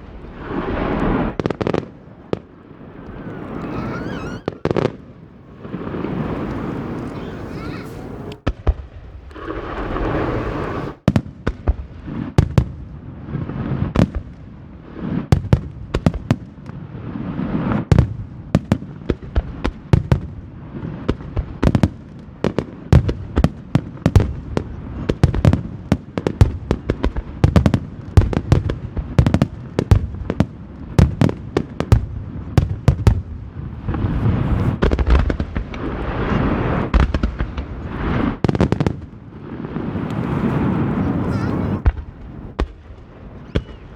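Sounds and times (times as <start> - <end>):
echoing rumble: 0.0 - 8.4
firework shells booming: 0.0 - 12.2, 23.0 - 43.9.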